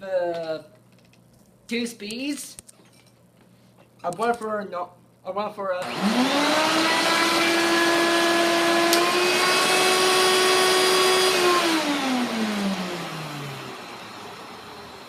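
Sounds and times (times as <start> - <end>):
motor winding down whine: 5.8 - 15.0
vacuum cleaner motor running: 5.8 - 15.0.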